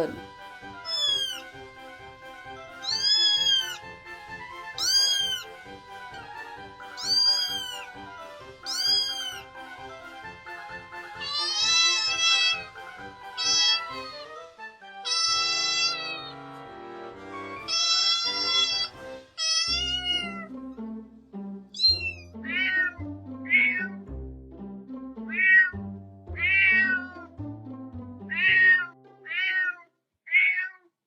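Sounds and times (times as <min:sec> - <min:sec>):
kitten meowing: 0:00.8 - 0:01.5, 0:02.8 - 0:03.9, 0:04.8 - 0:05.5, 0:06.9 - 0:08.0, 0:08.6 - 0:09.4, 0:11.2 - 0:12.7, 0:13.4 - 0:14.4, 0:15.0 - 0:16.4, 0:17.6 - 0:20.5, 0:21.8 - 0:24.0, 0:25.3 - 0:25.8, 0:26.4 - 0:27.3, 0:28.3 - 0:30.8
background music with bass: 0:16.4 - 0:28.7.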